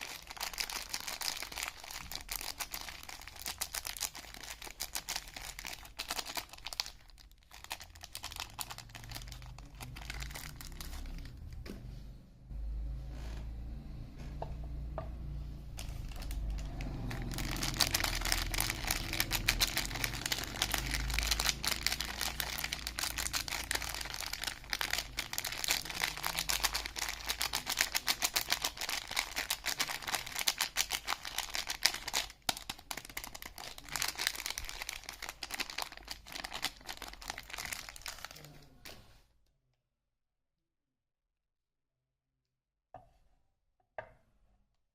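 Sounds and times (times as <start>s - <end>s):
soap wrapper crinkling and tearing: 0.0s - 11.6s, 15.8s - 39.0s.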